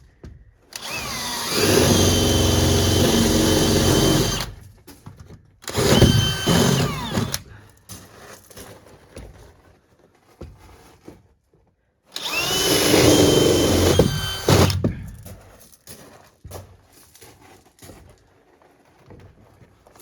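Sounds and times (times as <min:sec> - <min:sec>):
power drill whining: 0:00.7 - 0:04.7, 0:05.6 - 0:07.6, 0:12.1 - 0:15.2.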